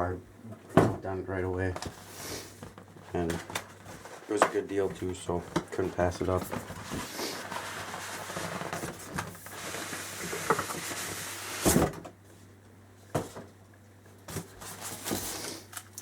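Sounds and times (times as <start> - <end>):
cardboard packaging rustling: 1.8 - 11.3, 14.3 - 16.0.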